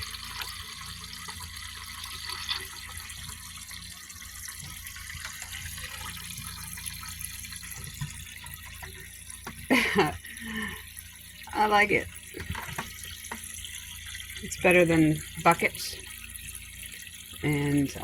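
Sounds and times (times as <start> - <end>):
water filling toilet tank: 0.0 - 18.0.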